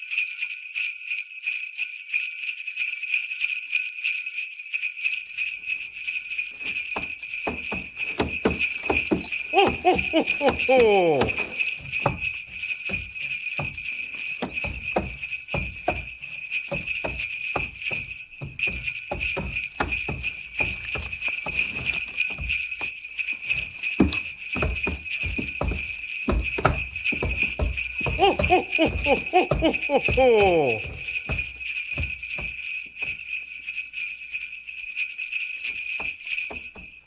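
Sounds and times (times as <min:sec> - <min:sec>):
sleigh bells jingling: 0:00.0 - 0:37.0
thumps and knocks: 0:06.7 - 0:33.2
deep voice laughing: 0:08.5 - 0:11.7, 0:28.0 - 0:31.2.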